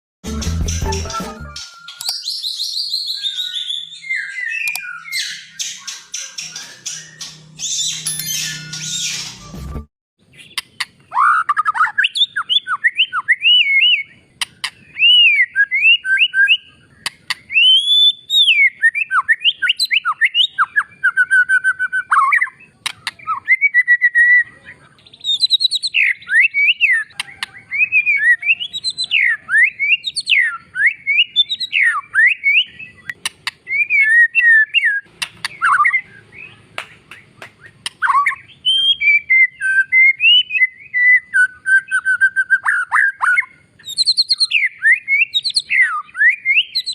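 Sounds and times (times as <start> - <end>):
bird singing whistled phrases: 1.5 - 9.6, 10.3 - 46.9
sharp clicks: 1.9 - 2.2, 4.6 - 4.9, 22.8 - 23.2, 33.1 - 33.6, 35.1 - 35.6.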